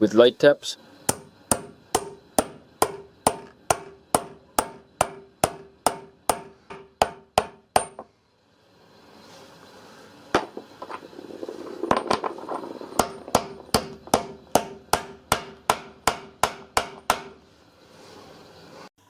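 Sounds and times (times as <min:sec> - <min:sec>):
hammer tapping metal drift: 0:01.1 - 0:08.1, 0:13.0 - 0:17.4.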